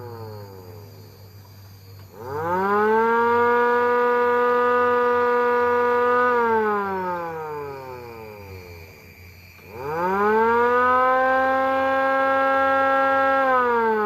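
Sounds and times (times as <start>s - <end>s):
siren winding up and down: 9.7s - 14.0s.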